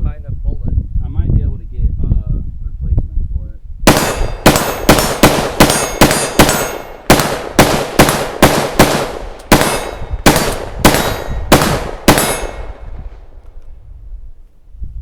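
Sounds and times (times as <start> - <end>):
gunshots: 3.9 - 13.3.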